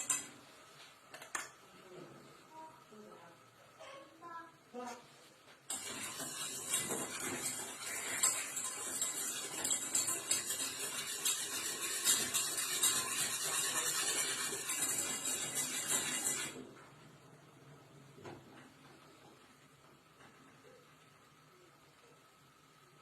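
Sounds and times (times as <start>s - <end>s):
utensil scraping a pan: 5.7s - 16.6s.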